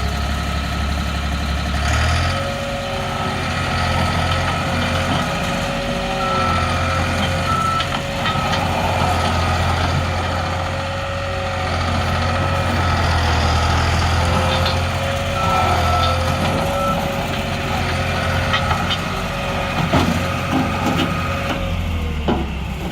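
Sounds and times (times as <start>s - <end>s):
loader engine with whine: 0.0s - 22.9s
backup alarm beeping: 6.0s - 8.7s.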